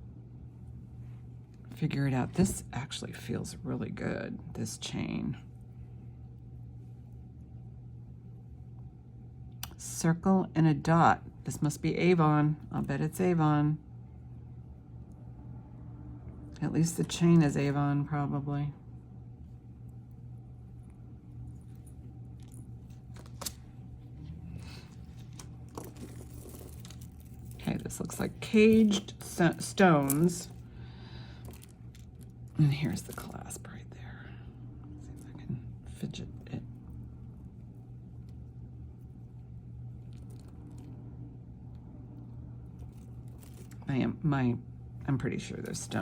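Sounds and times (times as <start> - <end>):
steady low hum: 0.0 - 46.0
jewelry clicking and scraping: 24.6 - 30.7, 31.3 - 33.7, 42.7 - 43.8
necklace chain clicks: 28.6 - 30.6.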